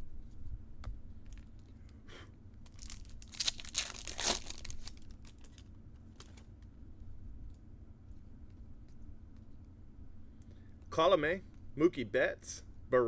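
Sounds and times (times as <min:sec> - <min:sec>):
foil wrapper tearing and crinkling: 0:02.7 - 0:06.4.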